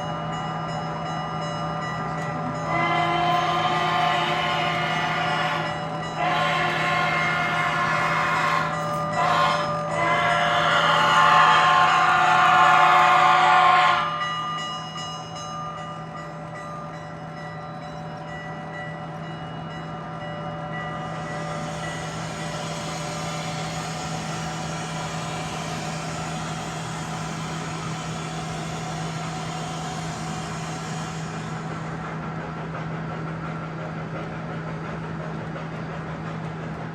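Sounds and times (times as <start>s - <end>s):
diesel horn chord: 2.7s - 14.0s.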